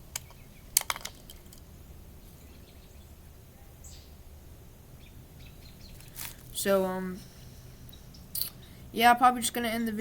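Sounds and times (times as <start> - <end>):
low steady background noise: 0.0 - 10.0
sharp clicks: 0.1 - 1.3.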